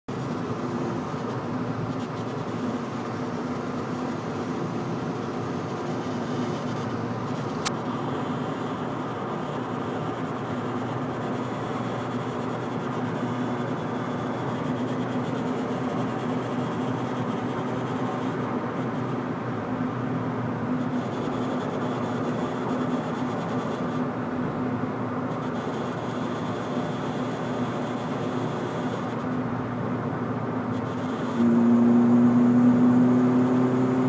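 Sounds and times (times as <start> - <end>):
car droning hum: 30.6 - 34.0.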